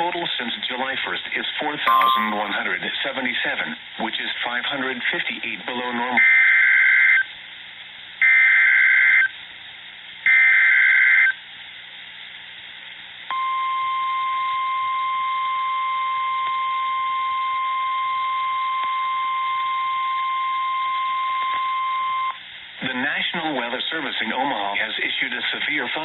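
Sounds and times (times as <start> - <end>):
steady alert tone: 1.9 - 2.6.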